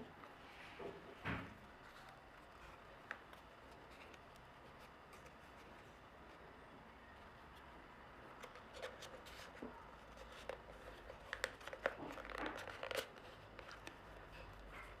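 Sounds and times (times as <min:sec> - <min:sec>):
paper folding and crinkling: 0:08.3 - 0:15.0.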